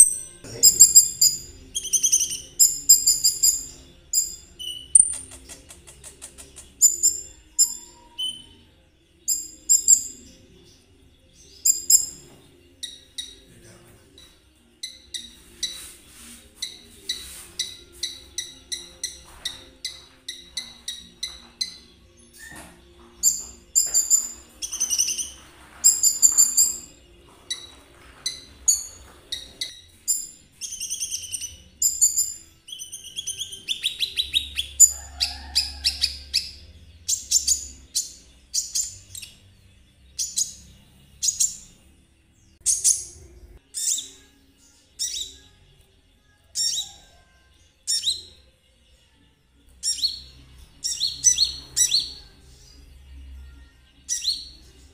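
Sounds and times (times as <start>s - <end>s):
songbird chirping and whistling: 0.0s - 48.5s, 49.6s - 54.9s.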